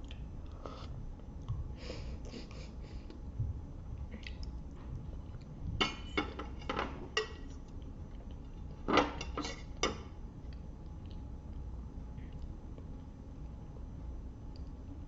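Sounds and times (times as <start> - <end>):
tableware clinking: 5.8 - 7.4.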